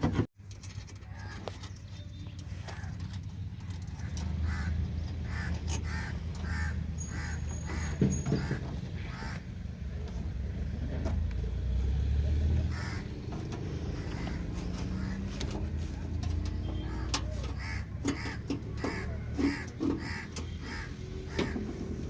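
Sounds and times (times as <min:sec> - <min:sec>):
bird calling: 0:01.0 - 0:09.5, 0:12.7 - 0:15.8, 0:16.5 - 0:21.8.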